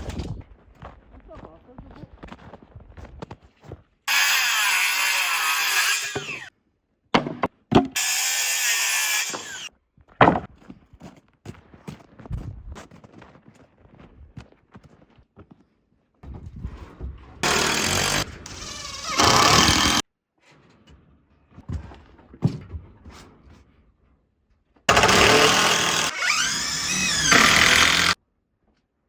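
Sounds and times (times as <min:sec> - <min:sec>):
power tool motor whirring: 0:04.1 - 0:06.5, 0:08.0 - 0:09.7, 0:17.4 - 0:20.0, 0:24.9 - 0:28.2.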